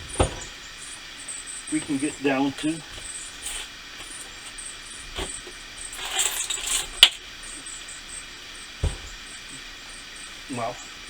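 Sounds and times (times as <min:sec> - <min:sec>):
dull thump: 0:00.0 - 0:00.8, 0:08.8 - 0:09.3
knock on table: 0:08.8 - 0:09.2.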